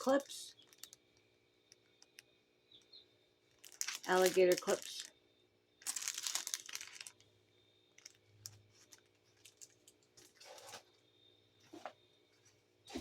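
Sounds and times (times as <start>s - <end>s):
plastic packaging crinkling: 0.0s - 2.3s, 3.5s - 5.2s, 5.8s - 11.0s.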